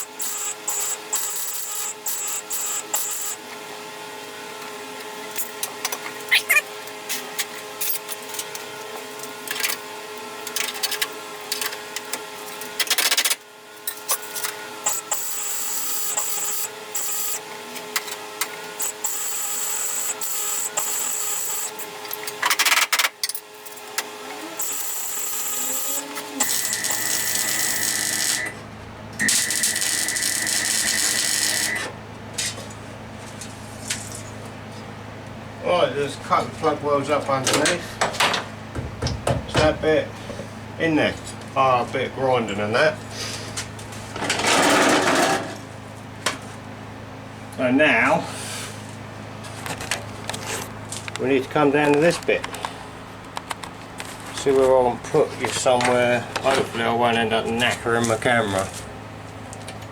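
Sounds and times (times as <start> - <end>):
crackling and clicking tool noise: 0.0 - 3.6, 4.6 - 15.4, 16.1 - 19.2, 19.9 - 28.6, 29.2 - 34.1, 49.5 - 54.8, 55.4 - 59.9
power tool whining: 24.0 - 28.6, 29.2 - 32.0.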